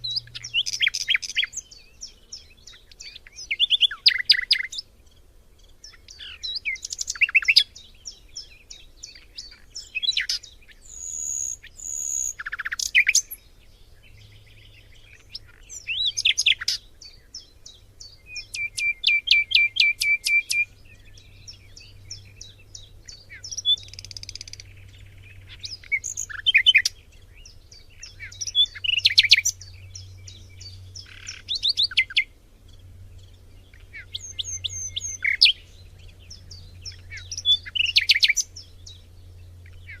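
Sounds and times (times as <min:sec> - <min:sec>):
bird fast trill: 0:00.0 - 0:01.8, 0:08.4 - 0:13.4, 0:18.3 - 0:21.2, 0:33.7 - 0:38.9
songbirds singing and calling: 0:00.0 - 0:40.0.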